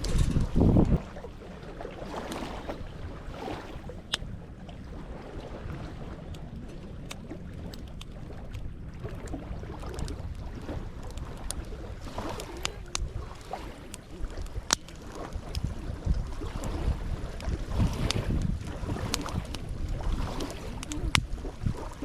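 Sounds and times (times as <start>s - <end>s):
wind rumble on microphone: 0.0s - 22.0s
campfire crackling and popping: 9.2s - 15.7s.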